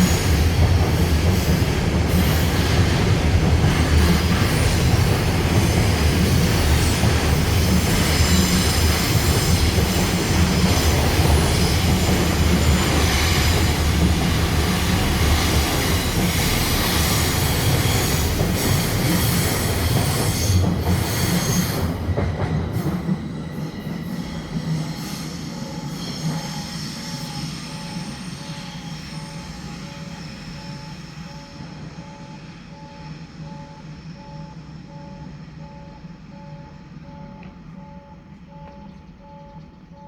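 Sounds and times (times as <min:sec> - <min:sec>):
train wheels rumbling: 0:00.0 - 0:40.0
high wheel squeal: 0:23.6 - 0:31.9
faint repeating tone: 0:27.2 - 0:40.0.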